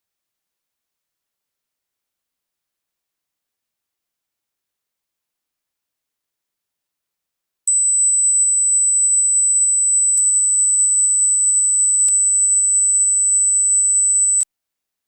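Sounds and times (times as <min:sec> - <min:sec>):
high-pitched sine tone: 0:07.7 - 0:14.5.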